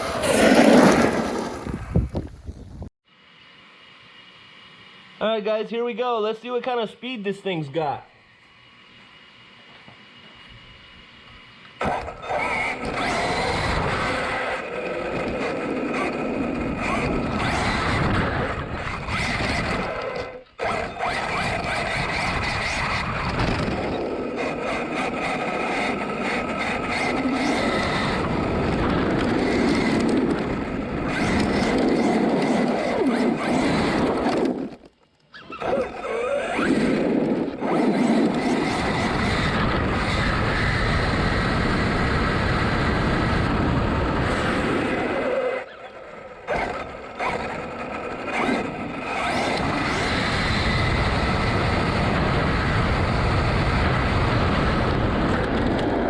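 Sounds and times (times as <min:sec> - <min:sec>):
tires running: 0:00.0 - 0:02.6
electric motor whining: 0:10.4 - 0:56.0.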